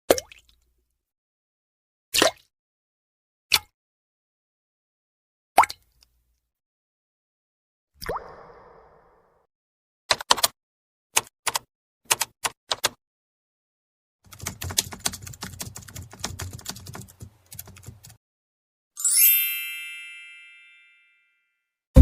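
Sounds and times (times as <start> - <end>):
rapid keyboard typing: 10.1 - 10.6, 11.2 - 13.0, 14.3 - 18.2
bright bell-like ding: 19.0 - 22.0.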